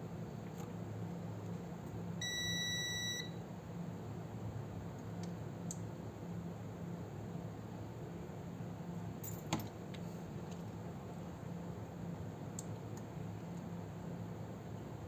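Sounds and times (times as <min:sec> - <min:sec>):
low electrical hum: 0:00.0 - 0:15.0
electronic beep: 0:02.2 - 0:03.3.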